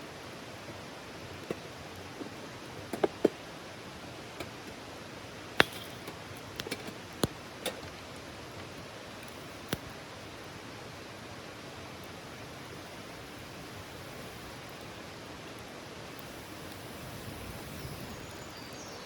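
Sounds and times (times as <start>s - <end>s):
steady fire hiss: 0.0s - 19.0s
campfire crackling and popping: 4.4s - 18.6s.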